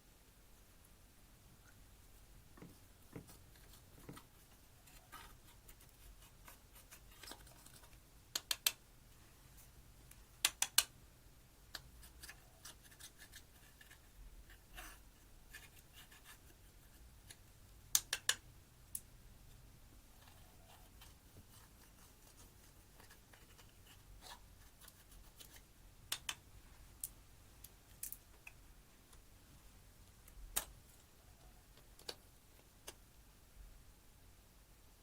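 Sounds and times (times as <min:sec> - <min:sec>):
scratchy rubbing: 0:02.6 - 0:08.0.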